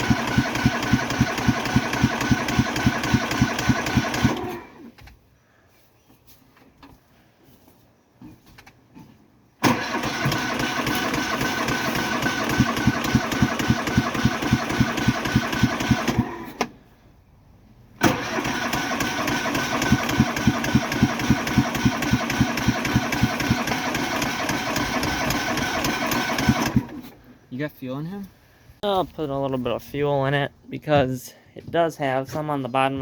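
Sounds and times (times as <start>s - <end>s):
lawn tractor engine cranking: 0.0s - 5.2s, 9.6s - 16.8s, 18.0s - 27.3s.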